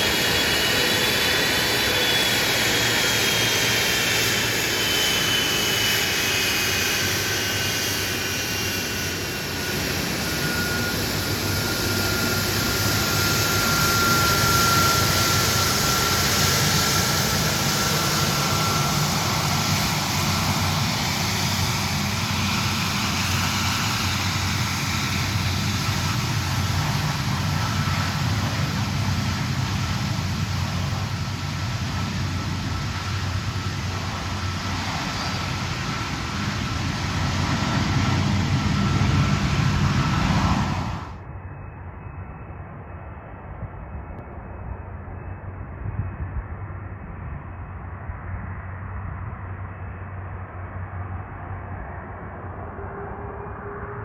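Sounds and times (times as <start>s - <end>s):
jet engines roaring: 0.0s - 41.2s.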